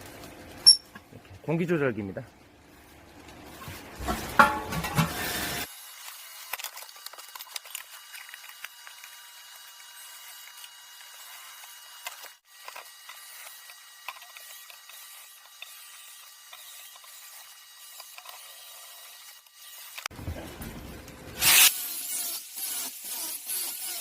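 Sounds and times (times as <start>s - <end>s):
handling noises: 2.8s - 5.3s
metallic clatter: 4.0s - 5.2s.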